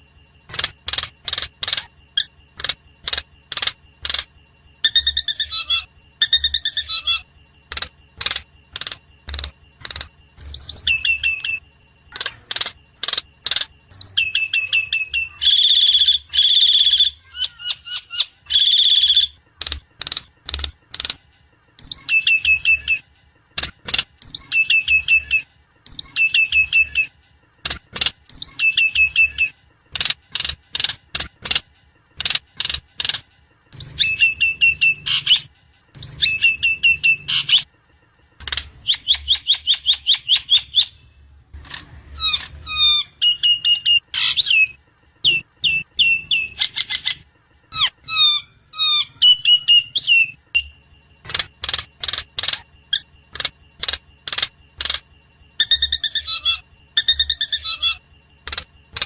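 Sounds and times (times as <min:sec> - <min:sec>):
bird chirping and calling: 0:00.5 - 0:21.2, 0:21.8 - 0:23.1, 0:23.9 - 0:27.1, 0:28.0 - 0:31.6, 0:32.2 - 0:37.7, 0:38.4 - 0:41.1, 0:42.2 - 0:59.0.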